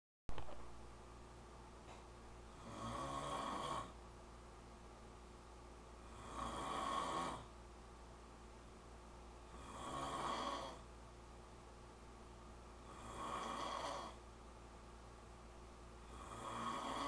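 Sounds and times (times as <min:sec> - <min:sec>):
faint steady hum: 0:00.3 - 0:17.0
man snoring: 0:02.5 - 0:04.0, 0:06.0 - 0:07.5, 0:09.5 - 0:10.8, 0:12.8 - 0:14.2, 0:16.0 - 0:17.0.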